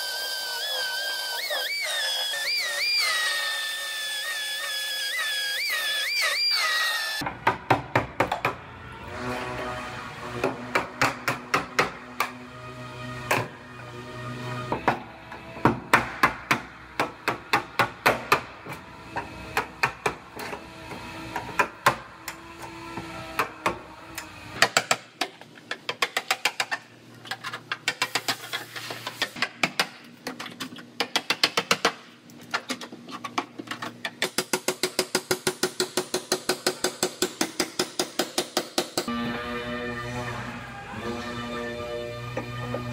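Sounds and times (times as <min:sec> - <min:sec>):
background music: 0:39.1 - 0:42.9.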